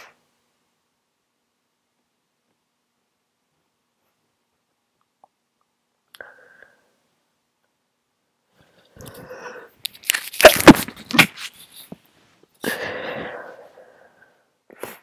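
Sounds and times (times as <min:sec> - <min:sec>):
person breathing out: 0:12.6 - 0:15.0.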